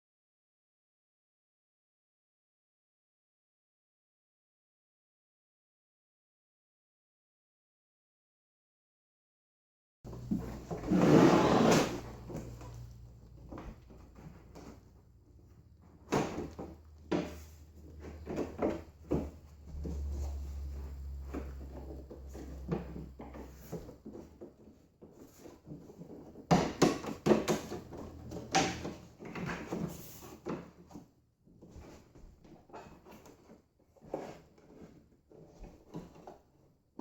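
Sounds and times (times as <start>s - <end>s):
plastic parts knocking and clacking: 21.3s - 36.5s.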